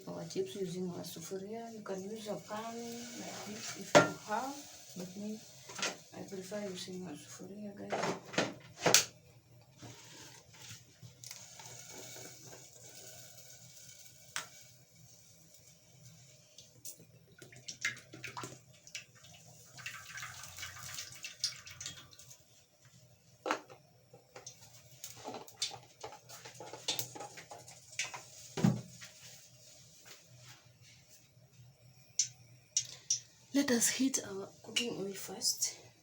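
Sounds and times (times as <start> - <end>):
liquid pouring hiss: 1.9 - 6.9, 9.8 - 22.6.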